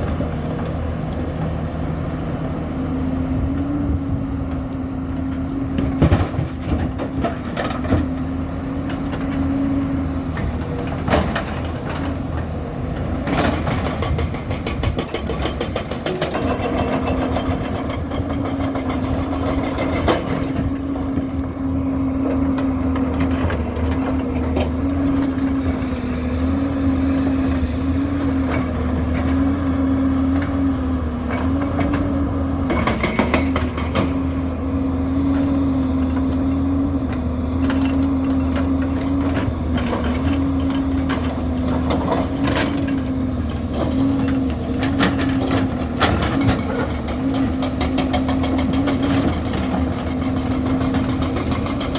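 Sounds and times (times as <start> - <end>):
heavy machine engine running: 0.0 - 51.9.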